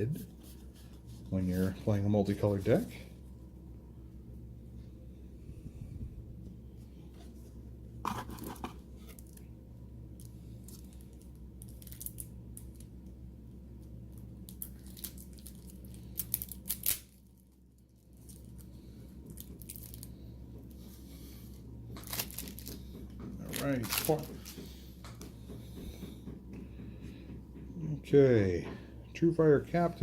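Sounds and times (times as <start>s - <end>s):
low hum: 0.0s - 30.0s
foil wrapper tearing and crinkling: 14.4s - 18.6s, 22.0s - 22.7s.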